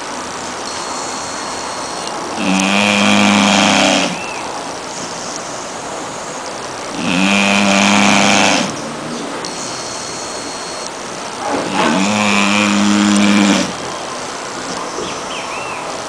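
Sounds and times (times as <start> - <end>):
steady background noise: 0.0 - 16.0
puppy snoring: 2.4 - 4.3, 7.0 - 8.8, 11.4 - 13.8.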